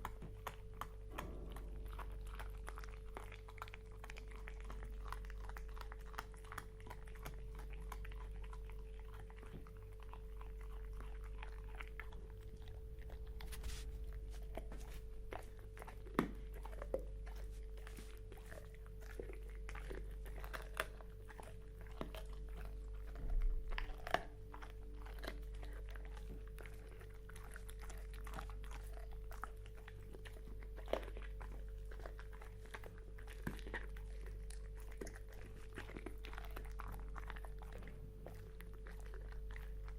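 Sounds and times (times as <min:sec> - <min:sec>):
wet licking: 0:00.0 - 0:23.3
dog chewing bones: 0:00.0 - 0:39.9
low electrical hum: 0:00.0 - 0:39.9.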